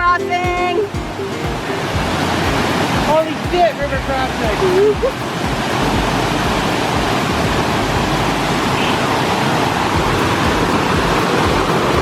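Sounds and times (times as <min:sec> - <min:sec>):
river water rushing: 0:00.0 - 0:12.0.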